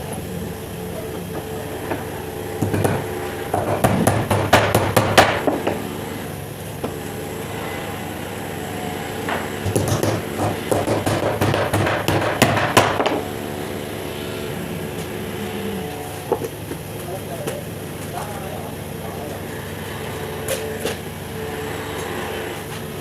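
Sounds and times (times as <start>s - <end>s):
hammer blows: 9.2s - 13.4s.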